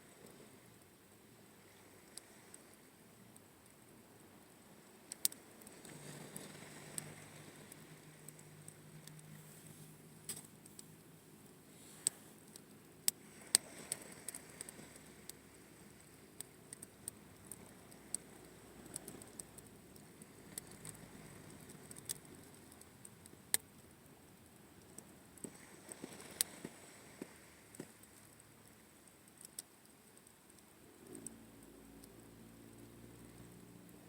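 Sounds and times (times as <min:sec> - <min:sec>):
campfire crackling and popping: 0:10.2 - 0:31.3.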